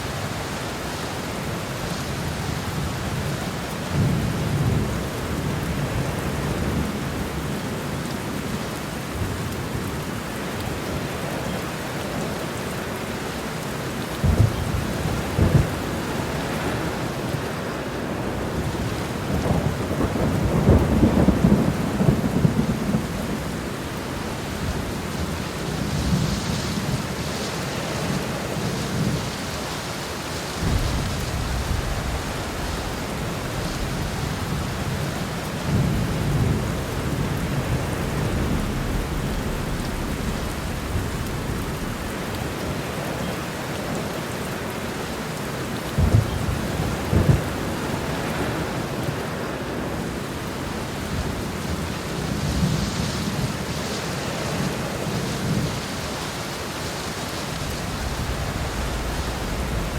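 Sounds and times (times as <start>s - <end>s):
heavy rain: 0.0s - 59.9s
thunder rumbling: 14.2s - 17.5s, 18.1s - 27.4s, 30.6s - 43.6s, 46.0s - 55.8s, 57.5s - 59.9s
sharp thunderclaps: 30.6s - 35.0s, 35.6s - 43.0s, 46.0s - 48.6s, 57.6s - 59.9s.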